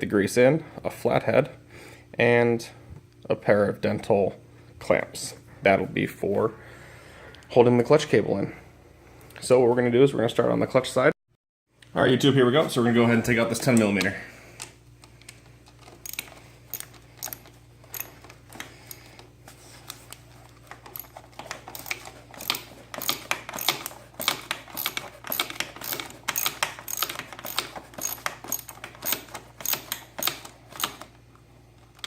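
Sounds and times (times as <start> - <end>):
ratchet clicking: 16.0 - 19.1, 20.9 - 31.0.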